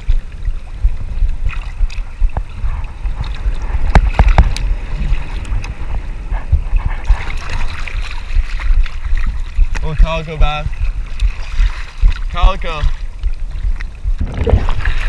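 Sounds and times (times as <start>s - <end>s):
moving seawater: 0.0s - 15.0s
wind rumbling on microphone: 0.0s - 15.0s.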